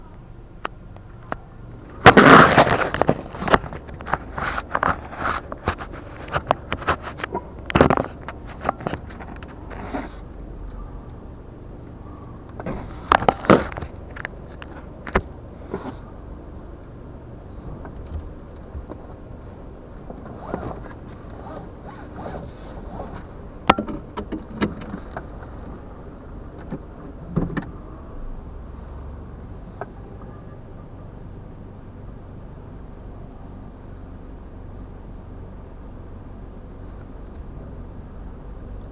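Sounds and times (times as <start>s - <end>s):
car engine and road rumble: 0.0s - 38.9s
handling clicks and knocks: 0.1s - 10.3s, 12.1s - 16.0s, 20.1s - 25.8s
rustling: 1.3s - 10.4s, 12.3s - 16.1s.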